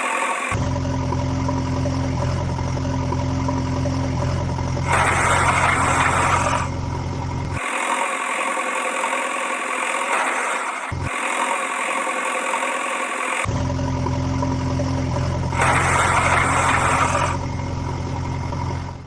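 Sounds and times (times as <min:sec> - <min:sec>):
engine idling: 0:00.0 - 0:19.0.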